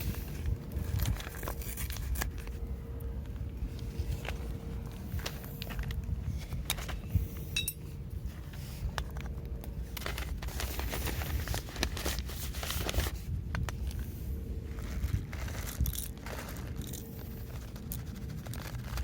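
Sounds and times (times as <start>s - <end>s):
gear clicking and scraping: 0.0s - 19.0s
steady low rumble: 0.0s - 19.0s
short ringing clink: 7.6s - 7.9s.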